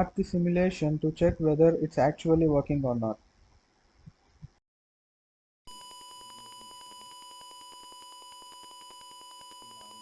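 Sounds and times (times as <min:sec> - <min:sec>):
high electronic buzzer beep: 0:05.7 - 0:10.0.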